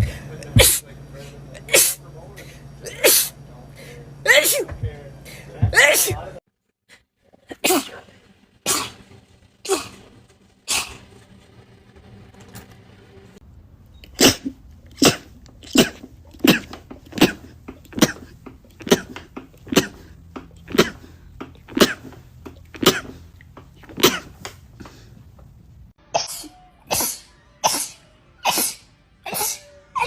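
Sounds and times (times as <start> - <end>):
person sneezing: 0.0 - 0.8, 1.7 - 2.0, 2.9 - 3.4, 4.3 - 4.8, 5.6 - 6.2, 7.5 - 9.0, 9.7 - 10.0, 14.2 - 20.1, 20.7 - 22.2, 22.8 - 23.2, 23.9 - 25.0, 26.1 - 30.0.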